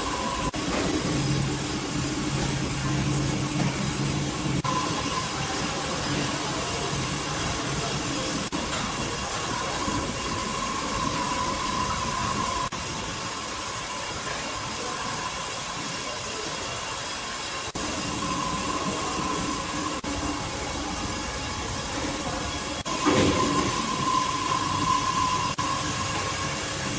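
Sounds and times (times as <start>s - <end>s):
sawmill machinery hissing: 0.0s - 26.9s.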